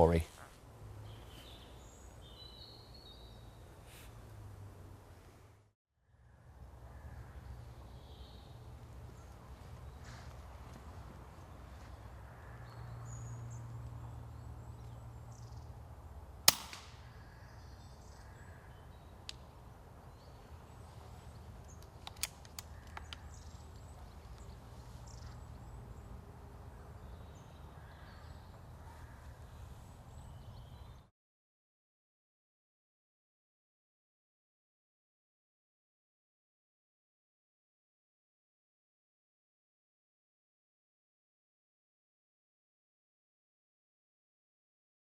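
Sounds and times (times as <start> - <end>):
air rifle shot: 16.5 - 17.4
faint bird calls: 16.9 - 19.2, 26.7 - 31.0
faint clicks: 21.6 - 24.5.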